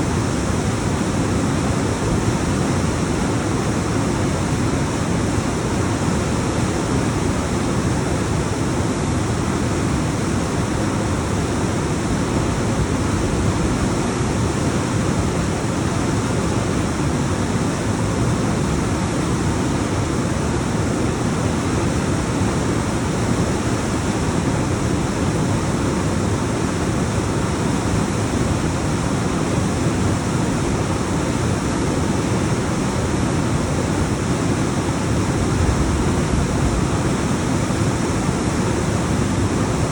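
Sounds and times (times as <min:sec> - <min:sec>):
waterfall rushing over rocks: 0:18.5 - 0:39.9.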